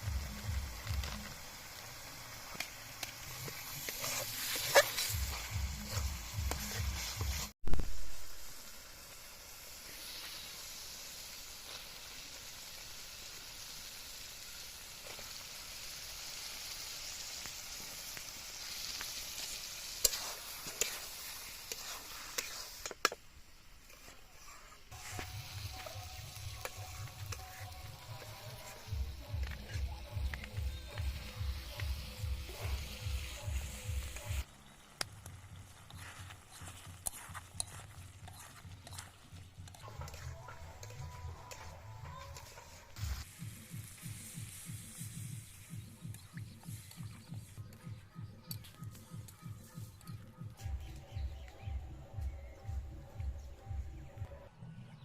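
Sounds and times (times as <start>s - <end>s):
curry sizzling in a pan: 0.0s - 47.7s
stirring in a pan: 0.1s - 7.6s, 17.3s - 34.4s, 35.3s - 47.5s.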